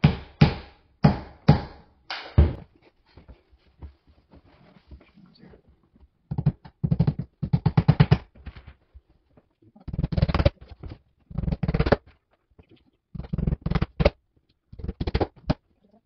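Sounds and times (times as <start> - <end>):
hammer tapping small nails: 6.3 - 8.3.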